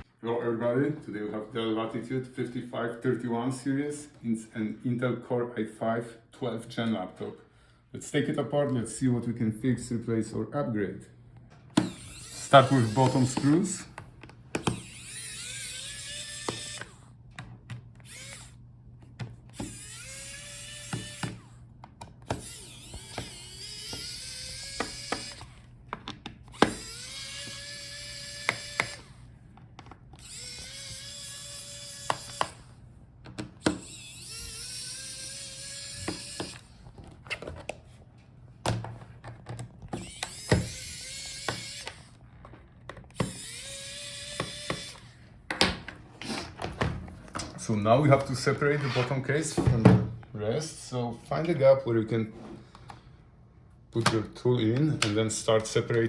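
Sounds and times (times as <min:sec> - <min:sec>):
electric screwdriver whirring: 0:11.7 - 0:32.8, 0:33.4 - 0:37.8, 0:39.8 - 0:45.3.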